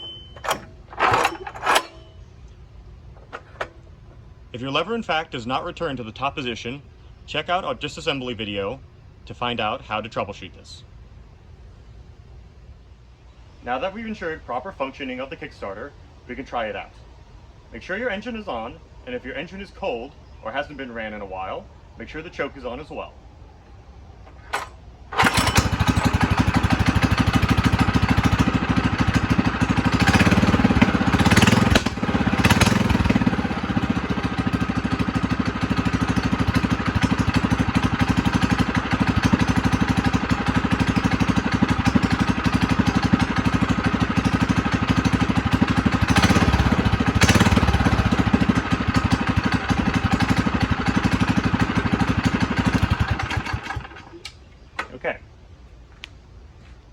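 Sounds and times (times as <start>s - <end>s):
engine kick-started: 0.0s - 4.7s, 24.2s - 55.0s
engine running steadily: 0.0s - 9.6s, 15.2s - 56.9s.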